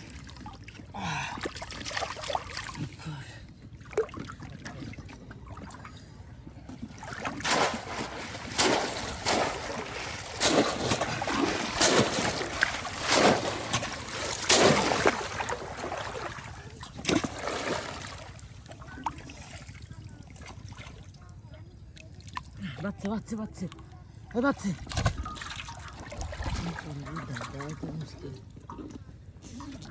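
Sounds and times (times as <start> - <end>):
water splashing: 0.0 - 3.0, 6.8 - 21.0, 24.8 - 28.3.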